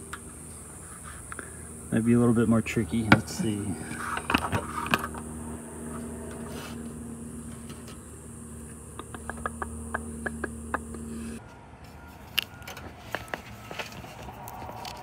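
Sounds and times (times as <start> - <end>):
steady hum: 0.0 - 11.4.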